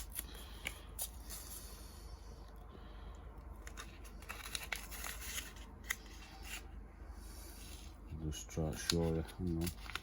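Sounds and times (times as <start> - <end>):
low steady hum: 0.0 - 10.0
paper packet rustling: 3.6 - 6.7, 8.3 - 10.0.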